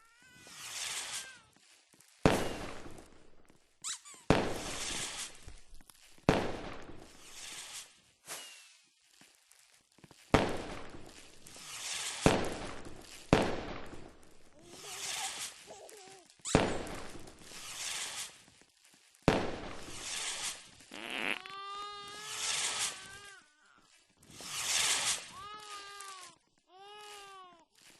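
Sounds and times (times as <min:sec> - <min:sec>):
fireworks bangs with crackle: 0:00.0 - 0:27.9.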